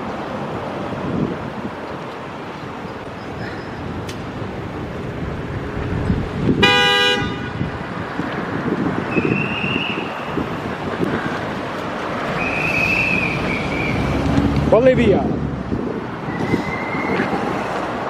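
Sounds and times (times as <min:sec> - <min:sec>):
city traffic noise: 0:00.0 - 0:18.0
car horn honk: 0:06.6 - 0:07.7.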